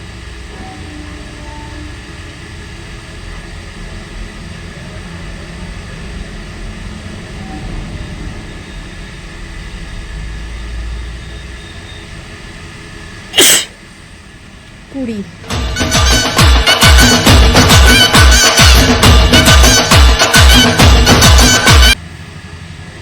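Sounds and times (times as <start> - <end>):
faint continuous hum: 0.0 - 15.6
low mechanical rumble: 0.0 - 23.0.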